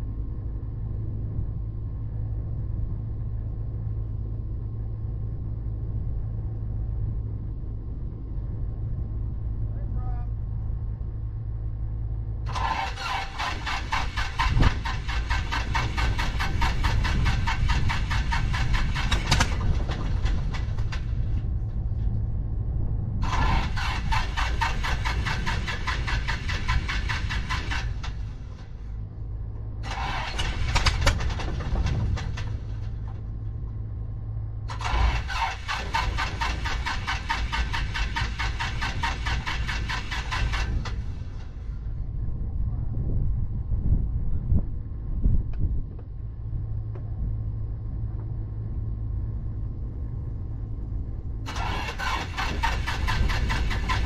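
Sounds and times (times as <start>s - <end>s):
steady low hum: 0.0s - 12.6s, 13.3s - 35.2s, 36.1s - 51.5s
aircraft engine starter cranking: 12.5s - 21.4s, 23.2s - 28.8s, 29.8s - 33.0s, 34.7s - 41.6s, 51.5s - 54.0s.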